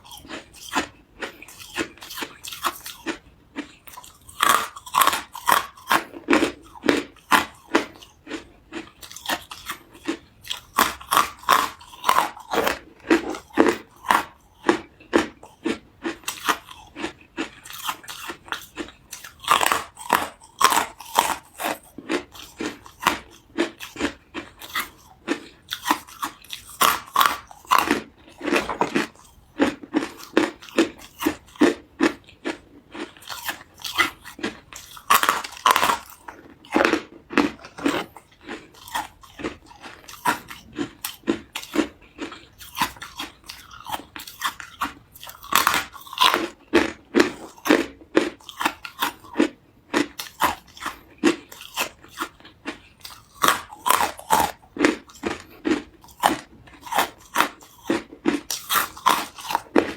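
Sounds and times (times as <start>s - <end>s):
ice crunching being chewed: 0.0s - 59.9s.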